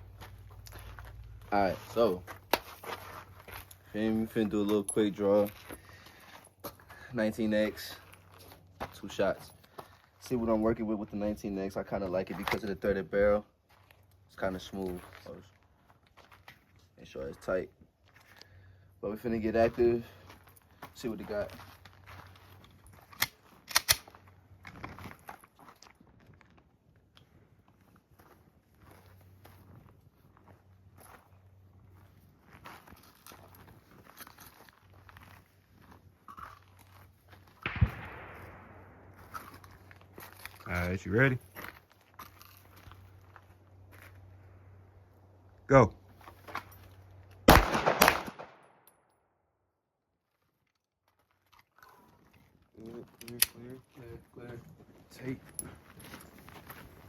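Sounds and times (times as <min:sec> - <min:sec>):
pistol mechanical clicks: 0:23.2 - 0:24.1, 0:47.4 - 0:49.0, 0:53.2 - 0:53.6
pistol shots with echo: 0:37.6 - 0:39.3, 0:47.5 - 0:48.8.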